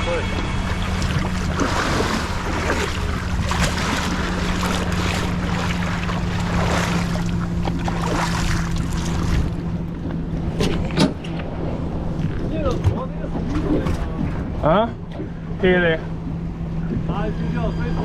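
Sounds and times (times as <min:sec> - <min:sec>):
outboard engine: 0:00.0 - 0:18.0
water rushing along hull: 0:00.0 - 0:18.0
wind on microphone: 0:00.4 - 0:12.5.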